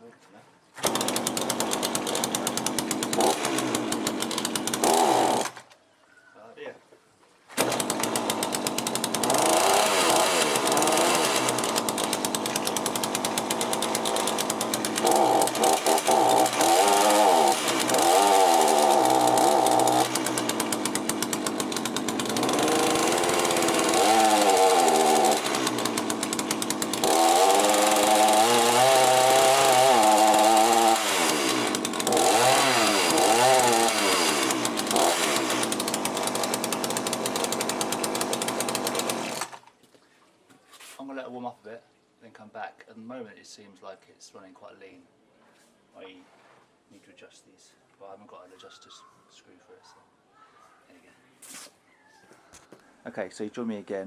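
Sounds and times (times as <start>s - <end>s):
chainsaw engine revving: 0.8s - 5.6s, 7.6s - 39.6s.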